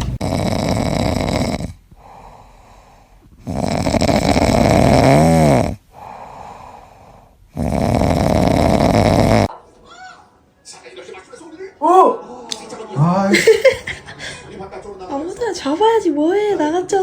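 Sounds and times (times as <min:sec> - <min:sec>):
pet snoring loudly: 0:00.0 - 0:09.5
quiet breaths: 0:00.1 - 0:09.5.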